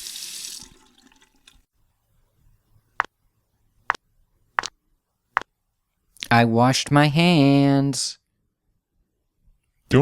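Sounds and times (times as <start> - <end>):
running tap water: 0.0 - 1.6.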